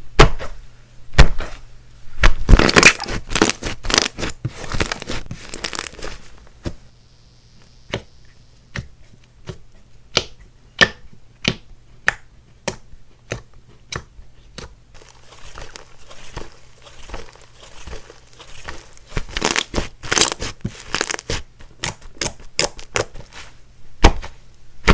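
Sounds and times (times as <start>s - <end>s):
slime crackling: 2.4s - 6.3s, 15.0s - 23.4s.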